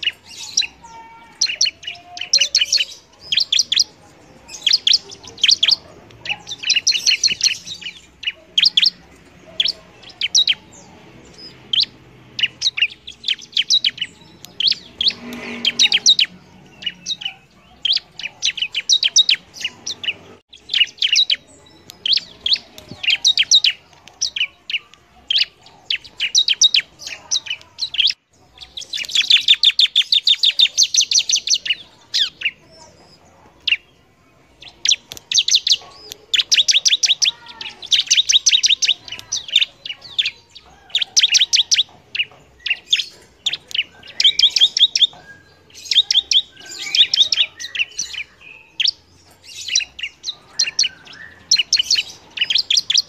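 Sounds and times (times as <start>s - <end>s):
bird singing high-pitched chirps: 0.0s - 53.0s.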